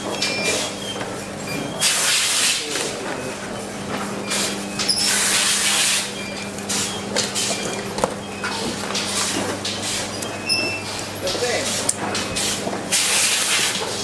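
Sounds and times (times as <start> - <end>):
steady machine hum: 0.0 - 14.0
hissing air bursts: 12.4 - 13.8.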